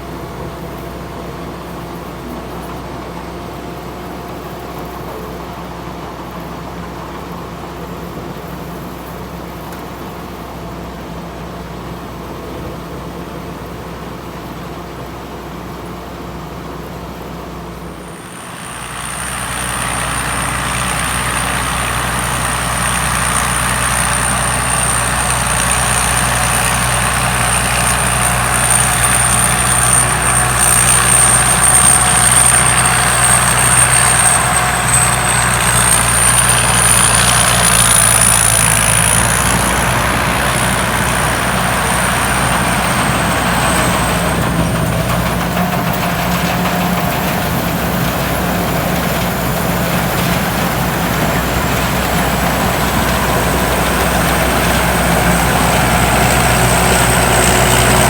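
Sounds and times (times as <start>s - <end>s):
combine harvester running: 0.0s - 58.0s
high thin whine: 17.9s - 46.5s.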